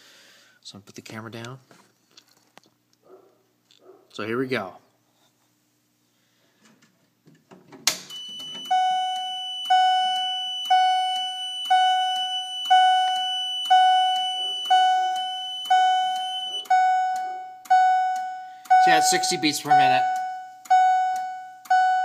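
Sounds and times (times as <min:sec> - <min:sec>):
alarm pull station click: 0:07.9 - 0:22.0
fire alarm ringing tone: 0:08.0 - 0:22.0
steady high-pitched tone: 0:08.1 - 0:22.0.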